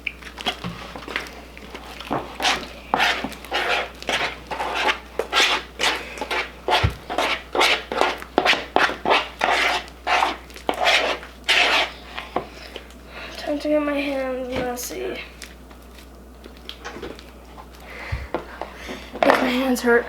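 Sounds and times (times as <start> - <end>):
slime stirred in a bowl: 0.0 - 12.9.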